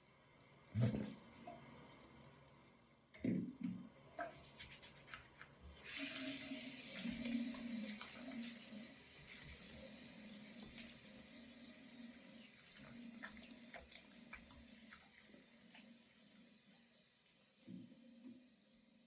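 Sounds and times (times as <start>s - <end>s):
faucet water running: 5.7s - 19.0s.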